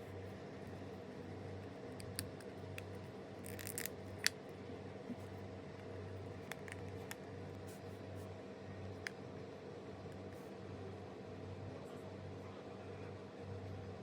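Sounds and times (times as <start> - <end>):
packaging crinkle: 2.0 - 4.4.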